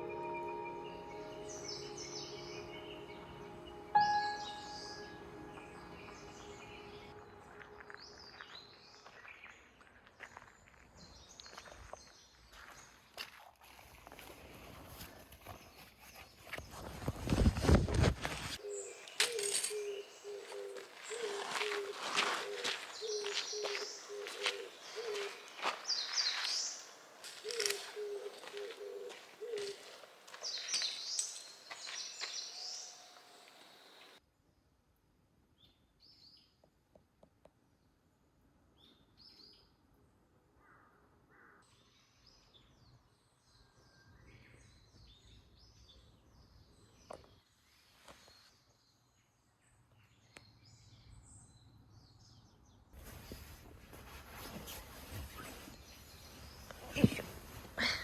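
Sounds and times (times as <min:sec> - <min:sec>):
birds chirping and trilling: 0:00.0 - 0:09.0, 0:18.6 - 0:34.2
quiet outdoor background noise: 0:00.0 - 0:58.0
bird low hooting: 0:27.4 - 0:30.0.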